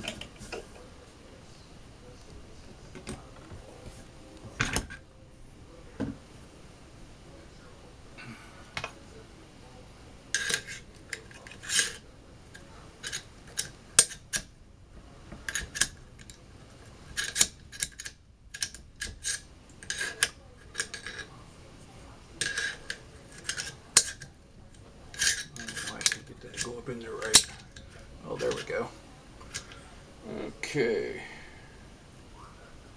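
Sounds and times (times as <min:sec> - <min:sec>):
metallic clicks of rifle parts: 0:10.4 - 0:14.5, 0:17.1 - 0:21.3, 0:22.4 - 0:24.3, 0:25.1 - 0:28.8.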